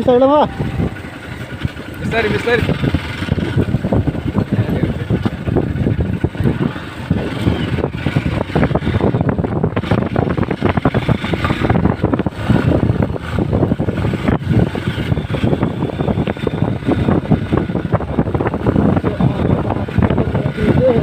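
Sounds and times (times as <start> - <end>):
motorcycle engine running: 0.0 - 21.0
wind buffeting microphone: 0.0 - 21.0.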